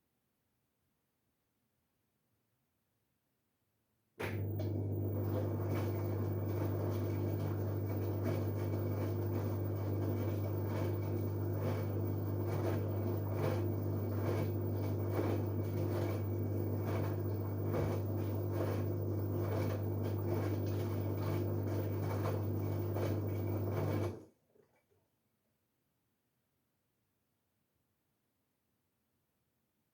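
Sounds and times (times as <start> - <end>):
washing machine humming: 4.2 - 24.3.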